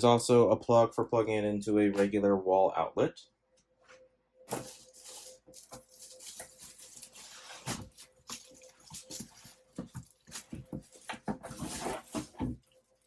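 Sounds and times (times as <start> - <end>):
packaging rustling: 4.5 - 13.0.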